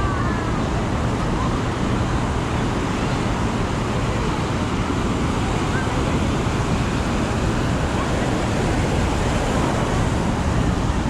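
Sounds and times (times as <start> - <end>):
surf: 0.0 - 11.0
wind: 0.0 - 11.0
road traffic: 2.6 - 11.0.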